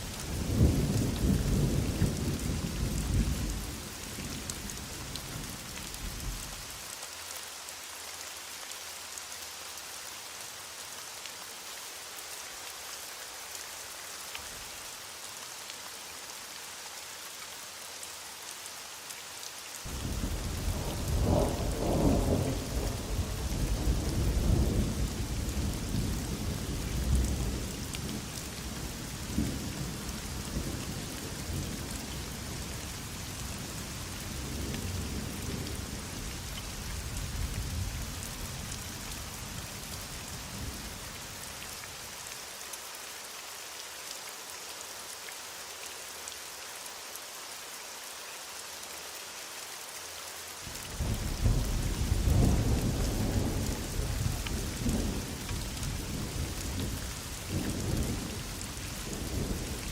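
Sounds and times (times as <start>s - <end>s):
heavy rain falling: 0.0s - 59.9s
rolling thunder: 51.0s - 58.3s.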